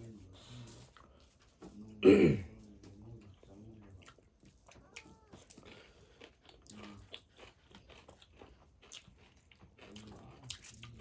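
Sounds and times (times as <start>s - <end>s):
wet chewing and crunching: 0.0s - 11.0s.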